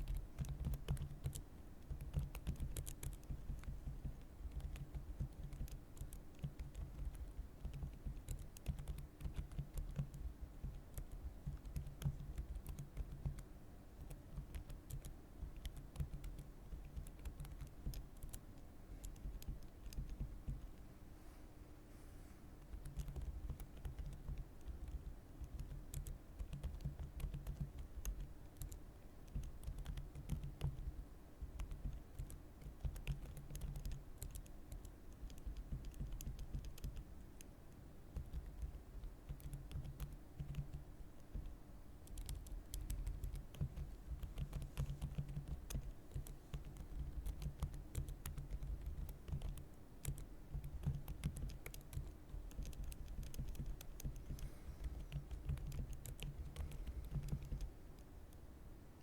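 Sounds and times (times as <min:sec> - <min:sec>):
keyboard key clicks: 0:38.2 - 0:58.1.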